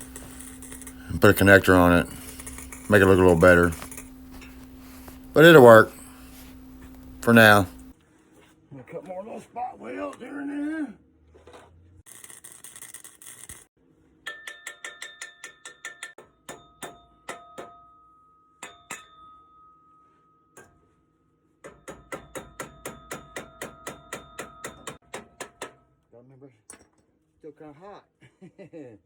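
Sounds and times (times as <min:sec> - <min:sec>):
welding arc hissing: 0:00.0 - 0:07.9, 0:12.1 - 0:13.7
hammer striking steel pipe: 0:14.2 - 0:20.9, 0:21.6 - 0:25.9.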